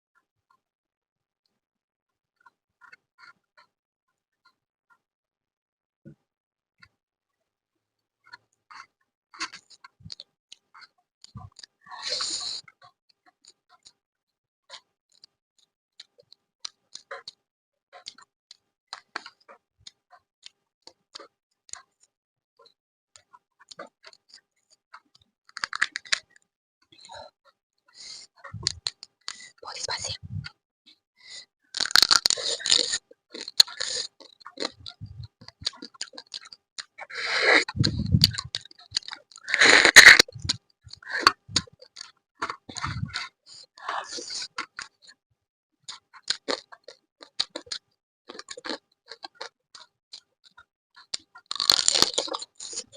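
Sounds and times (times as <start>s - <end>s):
eating crunches and clicks: 16.0s - 17.4s, 23.2s - 26.4s, 28.0s - 30.6s, 31.3s - 45.1s, 45.9s - 52.9s.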